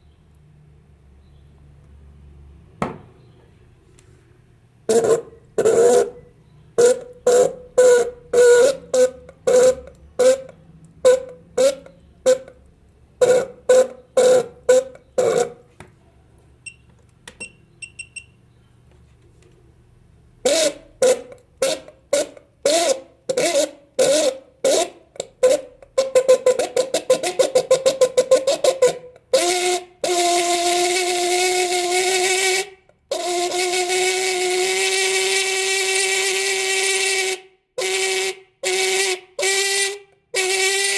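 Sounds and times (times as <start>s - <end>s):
car horn honking: 4.9s - 12.6s.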